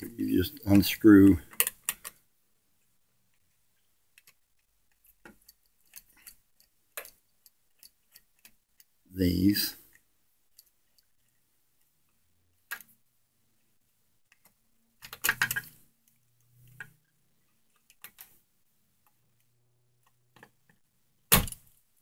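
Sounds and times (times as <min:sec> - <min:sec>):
screwdriver clicking and scraping: 0:04.2 - 0:08.9.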